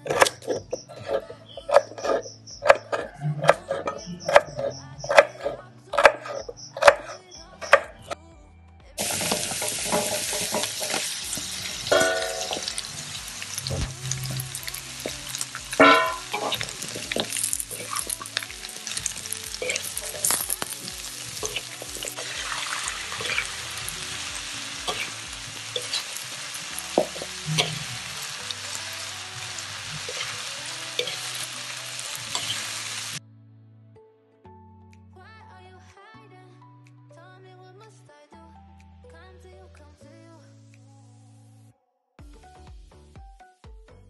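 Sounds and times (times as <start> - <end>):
utensil scraping a pan: 0.0 - 7.8, 9.0 - 12.8, 13.6 - 28.5
background music: 0.0 - 44.0
food sizzling in a pan: 9.0 - 33.2.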